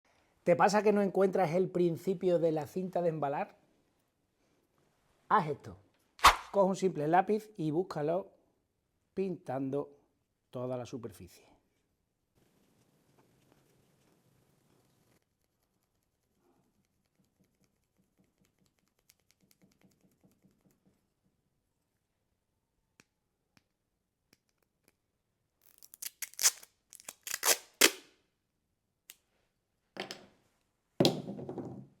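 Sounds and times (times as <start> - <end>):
pencil scratching on tape: 15.0 - 21.0
tape peeled off roll: 25.6 - 28.1.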